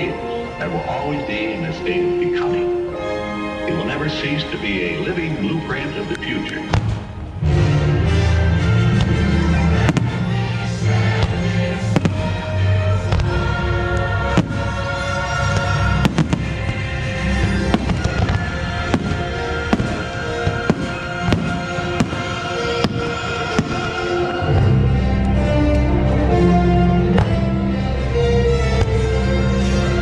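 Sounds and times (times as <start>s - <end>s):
loud music soundtrack: 0.0s - 30.0s
fireworks bursting: 6.6s - 7.3s, 8.8s - 24.7s.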